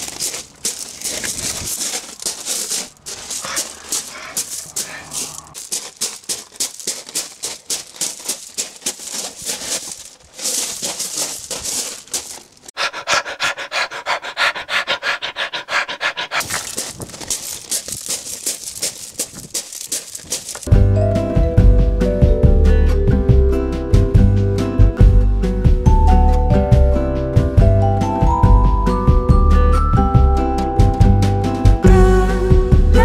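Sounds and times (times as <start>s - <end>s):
person panting hard: 0.0s - 20.7s
voiced gasps: 3.1s - 5.6s, 12.8s - 16.9s.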